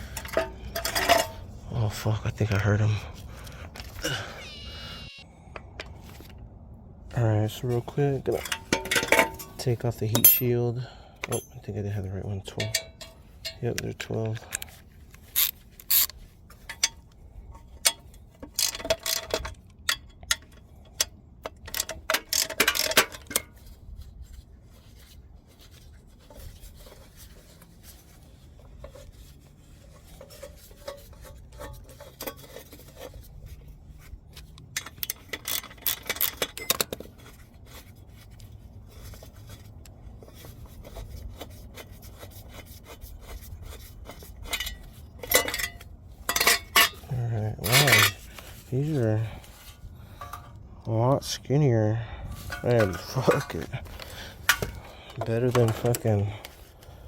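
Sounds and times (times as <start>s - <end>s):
metal tools clinking: 0.0s - 2.7s, 7.8s - 14.7s, 34.4s - 37.9s, 44.2s - 50.6s, 52.3s - 56.7s
ratchet wrench clicking: 15.3s - 16.1s.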